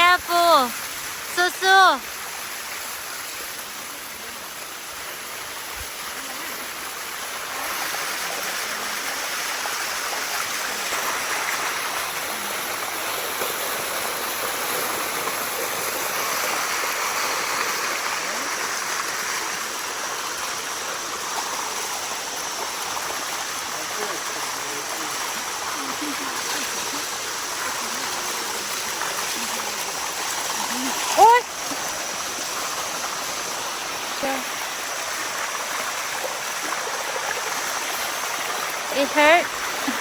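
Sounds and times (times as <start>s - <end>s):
waterfall rushing: 0.0s - 40.0s.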